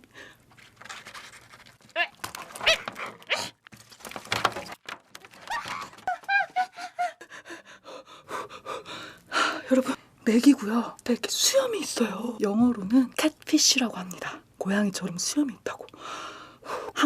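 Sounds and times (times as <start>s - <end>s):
person panting hard: 6.8s - 9.7s.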